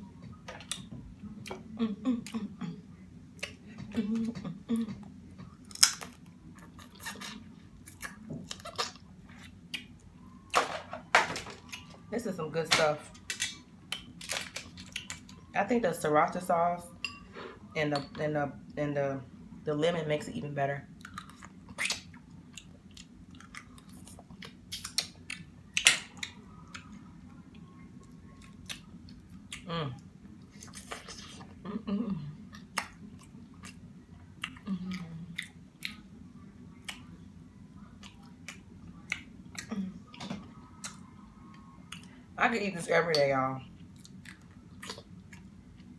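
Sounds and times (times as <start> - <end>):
person chewing and smacking: 5.7 - 10.1, 21.0 - 27.0, 32.5 - 36.1, 36.8 - 37.2, 38.0 - 40.2, 43.8 - 45.9
chewing and wet mouth smacking: 43.8 - 45.9.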